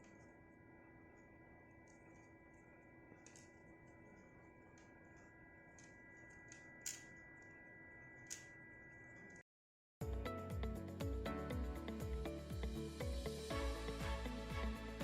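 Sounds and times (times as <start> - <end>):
faint electrical whine: 0.0 - 9.4.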